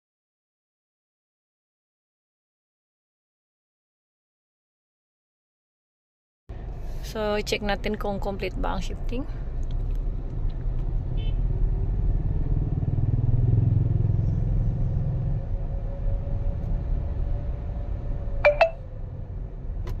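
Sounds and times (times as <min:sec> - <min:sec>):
engine and road rumble: 0:06.5 - 0:20.0.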